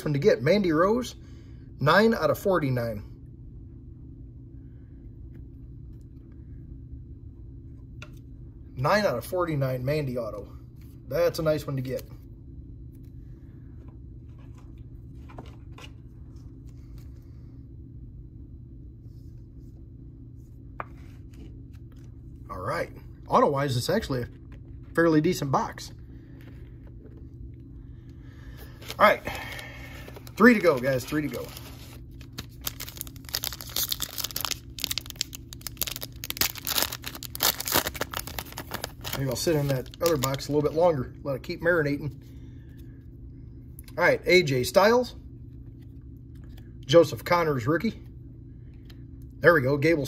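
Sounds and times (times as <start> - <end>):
steady low hum: 0.0 - 50.0
trading cards rustling: 28.6 - 40.8.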